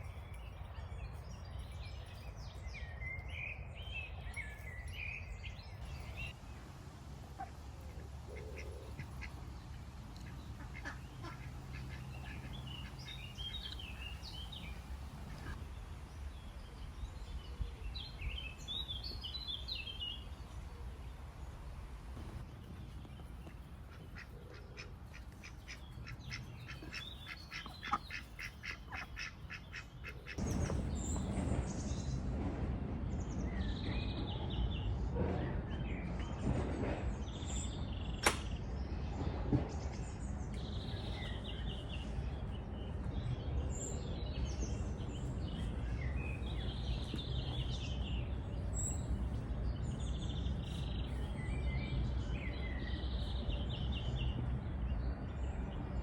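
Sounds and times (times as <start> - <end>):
small birds chirping: 0.0 - 32.2, 37.2 - 56.0
ducks quacking: 7.4 - 13.8, 23.9 - 30.8
low rumble: 30.4 - 53.4.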